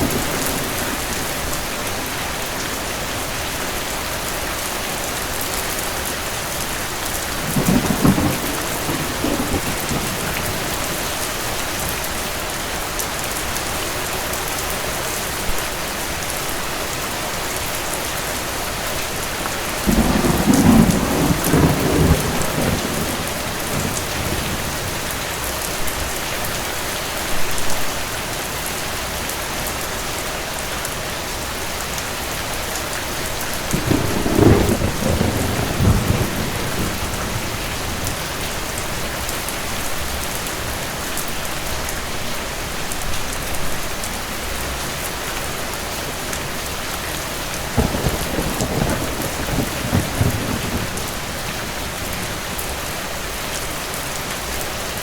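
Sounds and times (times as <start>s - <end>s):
distant thunder rumbling: 0.0s - 2.3s, 7.2s - 12.0s, 19.8s - 25.5s, 33.7s - 39.9s, 47.7s - 53.0s
steady rain: 0.0s - 55.0s.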